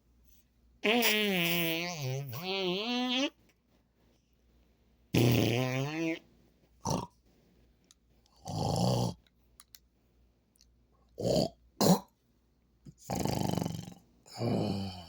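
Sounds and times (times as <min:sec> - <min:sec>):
man snoring: 0:13.1 - 0:15.0.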